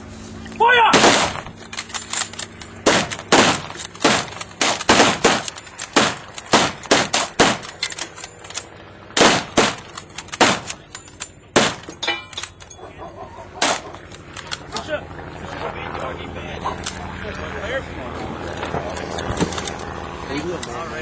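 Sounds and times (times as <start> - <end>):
rifle shots: 0.7 - 14.9.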